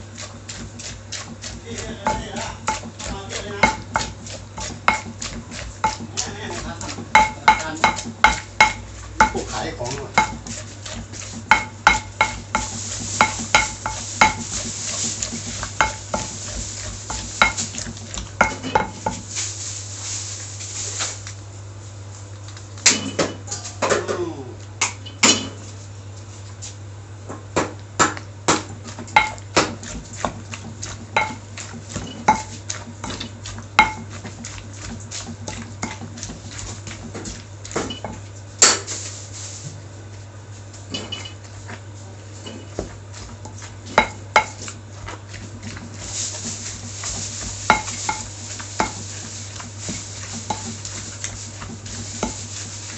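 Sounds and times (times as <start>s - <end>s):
scraping while mixing food: 0.0s - 23.8s, 28.0s - 52.9s
steady low hum: 0.0s - 52.9s
utensils knocking on dishes: 1.8s - 10.5s, 11.5s - 17.8s, 18.4s - 19.2s, 31.2s - 31.4s.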